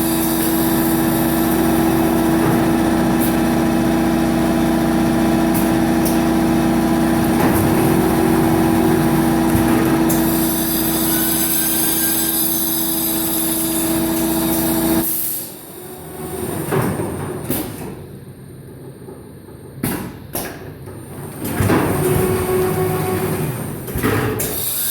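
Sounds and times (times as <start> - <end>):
slitting machine motor hum: 0.0 - 15.0.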